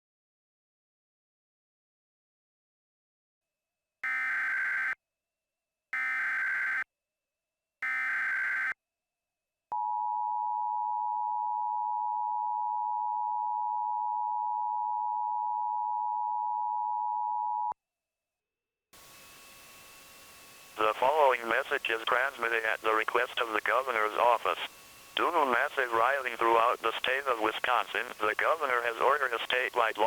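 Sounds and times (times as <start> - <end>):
buzzing data bursts: 20.2 - 30.0.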